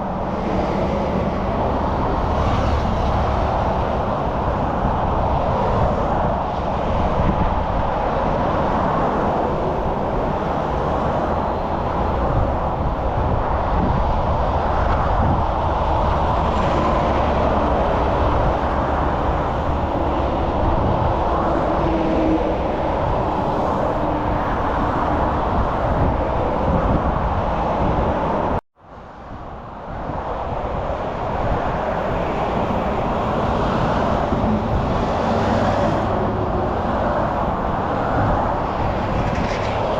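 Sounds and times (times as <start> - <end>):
road traffic rumble: 0.0 - 39.9.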